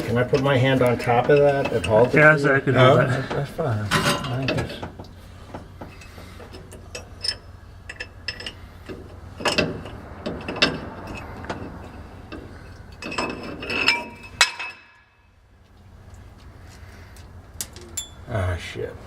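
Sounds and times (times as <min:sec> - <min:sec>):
metal tools clinking and scraping: 0:00.0 - 0:04.9, 0:05.8 - 0:15.3, 0:17.6 - 0:18.3
ringing metal clanks: 0:05.9 - 0:15.4, 0:17.6 - 0:18.3.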